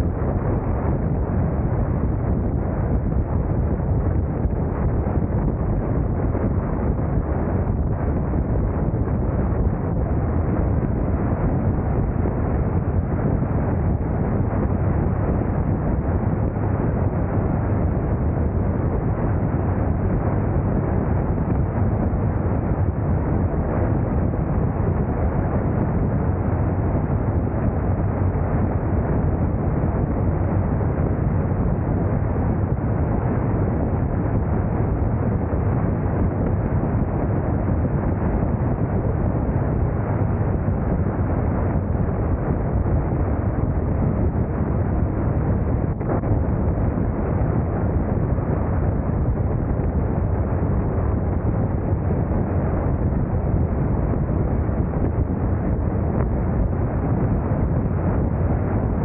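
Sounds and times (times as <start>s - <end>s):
wind rushing over microphone: 0.0s - 59.0s.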